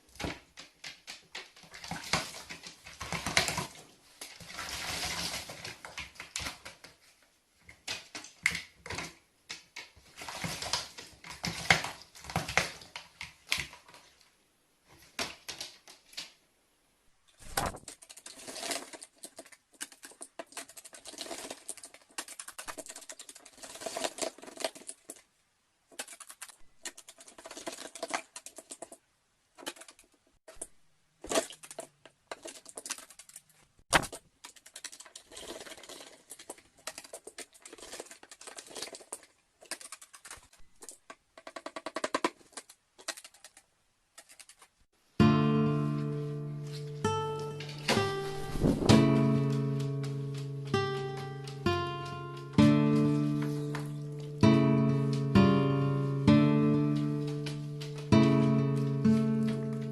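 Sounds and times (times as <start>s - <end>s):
rapid tapping and clicking: 19.3s - 25.2s, 25.9s - 30.6s, 34.3s - 44.7s.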